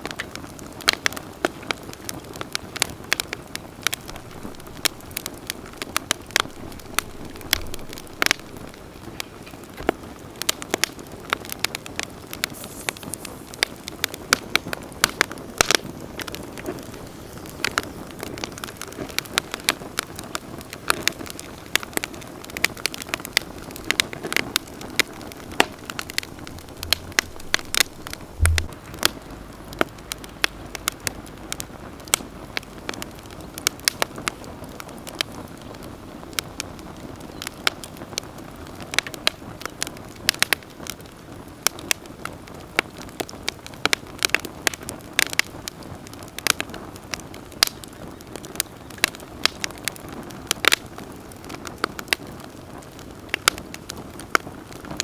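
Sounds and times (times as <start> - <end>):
campfire crackling and popping: 0.0 - 55.0
hiss of flames: 0.8 - 35.4
brief low thump: 25.6 - 30.0.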